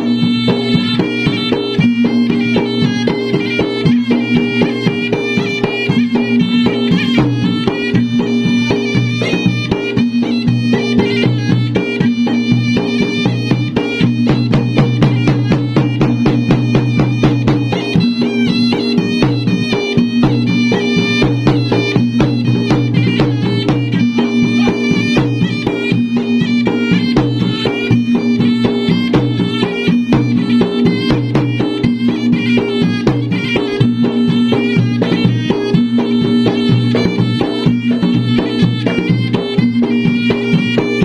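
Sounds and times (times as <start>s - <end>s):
fast drum strokes: 0.0s - 41.0s
wind instrument melody: 0.0s - 41.0s.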